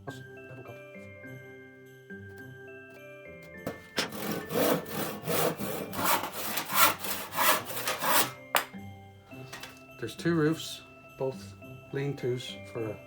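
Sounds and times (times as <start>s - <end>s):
hand saw cutting wood: 3.9s - 8.7s.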